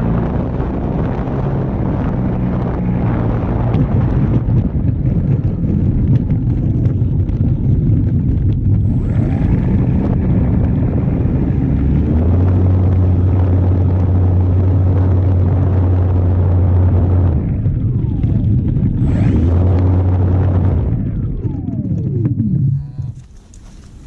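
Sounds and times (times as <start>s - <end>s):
steady low drone: 0.0s - 24.0s
wind rumbling on microphone: 0.0s - 24.0s.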